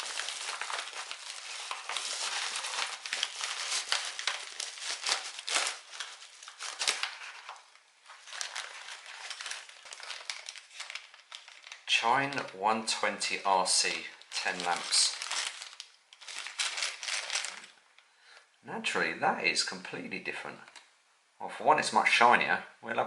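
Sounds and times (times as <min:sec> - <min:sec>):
packaging crinkling: 0:00.0 - 0:17.9.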